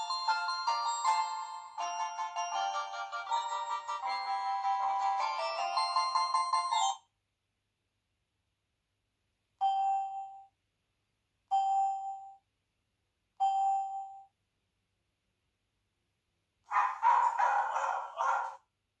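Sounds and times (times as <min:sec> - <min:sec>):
melodic ringtone: 0:00.0 - 0:07.1
ringtone chime: 0:00.0 - 0:07.1, 0:09.6 - 0:10.4, 0:11.6 - 0:12.4, 0:13.4 - 0:14.2.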